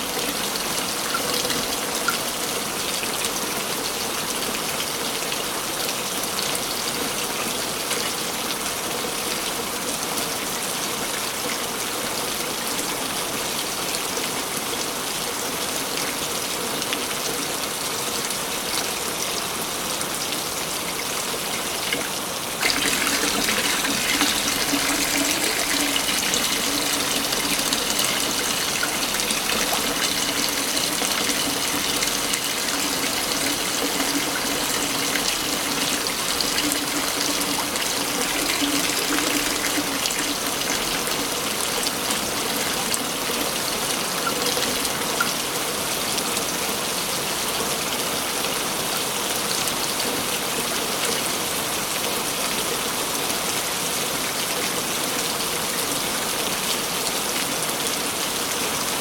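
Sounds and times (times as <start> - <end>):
waterfall rushing: 21.6 - 42.4.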